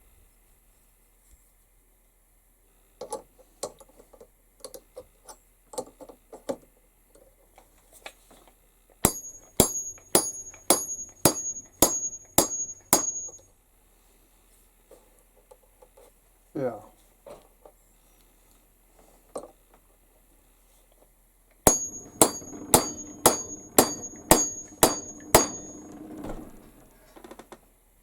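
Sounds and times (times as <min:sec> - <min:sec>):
hammer on metal rivet: 0:09.1 - 0:13.4, 0:21.7 - 0:26.0.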